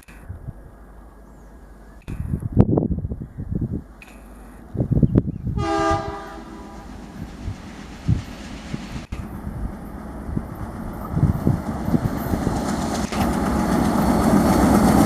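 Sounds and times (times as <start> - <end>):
passing train rumble: 0.3 - 15.0
locomotive horn chord: 5.6 - 7.0.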